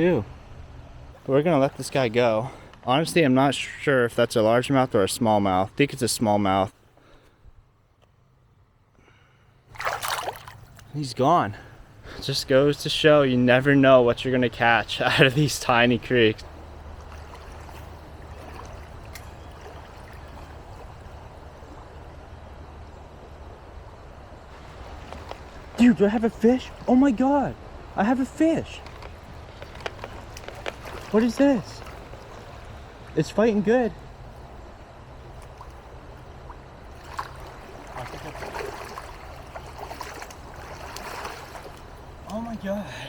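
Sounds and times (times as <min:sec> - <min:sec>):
fish splashing at surface: 0:09.7 - 0:10.8
creek water rushing: 0:09.7 - 0:13.0, 0:14.6 - 0:43.0.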